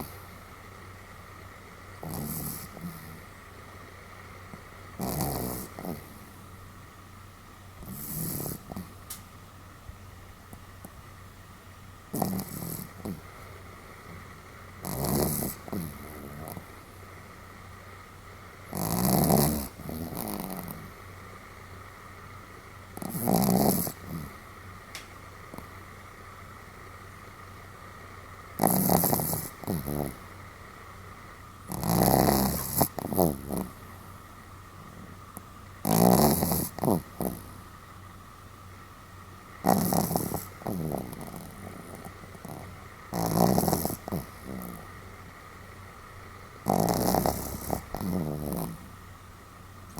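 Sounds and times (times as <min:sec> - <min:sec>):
dog snoring: 0:00.0 - 0:00.6, 0:01.9 - 0:03.4, 0:04.5 - 0:06.5, 0:07.8 - 0:09.2, 0:12.1 - 0:17.3, 0:18.6 - 0:21.4, 0:22.9 - 0:24.5, 0:25.4 - 0:26.0, 0:28.5 - 0:30.4, 0:31.6 - 0:37.8, 0:39.6 - 0:49.0.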